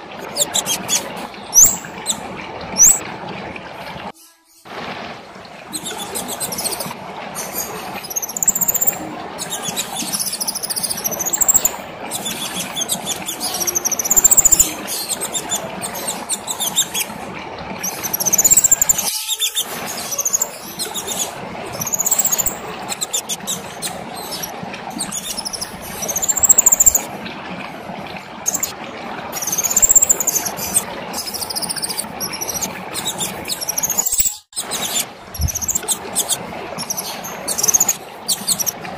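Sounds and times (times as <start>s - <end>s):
songbird singing high chirped phrases: 1.6s - 2.2s, 2.8s - 3.0s, 8.1s - 16.8s, 18.0s - 19.5s, 21.8s - 23.1s, 25.2s - 27.1s, 29.4s - 32.7s.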